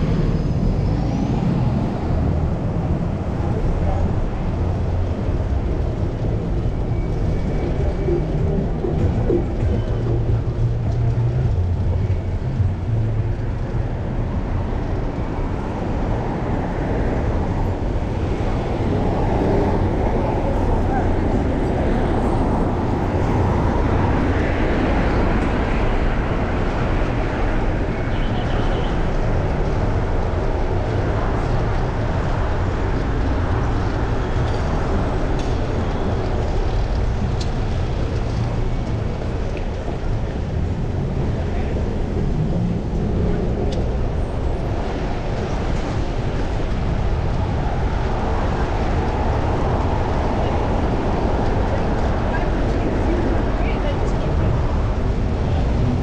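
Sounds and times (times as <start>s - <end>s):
wind rush: 0.0s - 28.1s, 29.0s - 56.0s
bicycle road noise: 0.0s - 56.0s
street traffic rumble: 0.0s - 56.0s
low hum: 4.8s - 15.6s.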